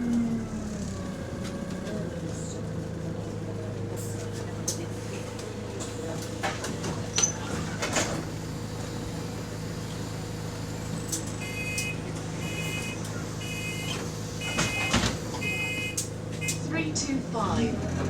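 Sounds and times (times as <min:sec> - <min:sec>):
bus engine humming: 0:00.0 - 0:18.0
door warning beeps: 0:11.4 - 0:16.6.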